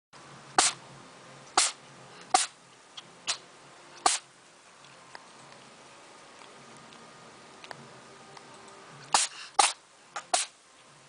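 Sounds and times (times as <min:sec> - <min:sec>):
cat sneezing: 0:00.6 - 0:00.8, 0:01.6 - 0:02.6, 0:04.0 - 0:04.3, 0:09.1 - 0:10.6.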